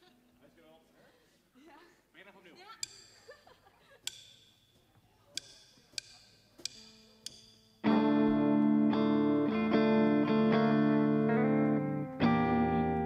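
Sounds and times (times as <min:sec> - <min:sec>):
sharp percussive clicks: 0:02.8 - 0:03.4, 0:04.0 - 0:07.9
distorted electric guitar chord: 0:07.9 - 0:13.0.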